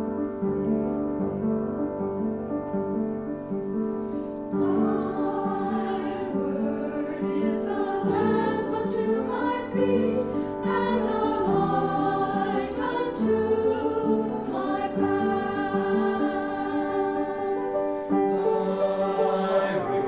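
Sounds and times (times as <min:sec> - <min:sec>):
choir singing a hymn: 0:04.1 - 0:20.0.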